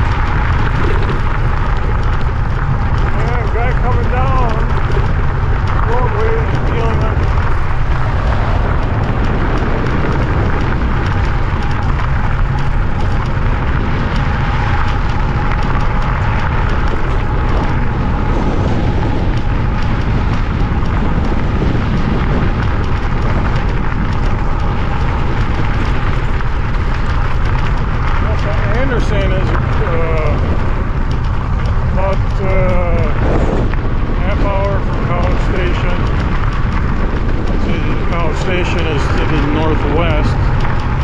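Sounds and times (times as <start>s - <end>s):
deep rumble: 0.0s - 41.0s
wind buffeting microphone: 0.0s - 41.0s.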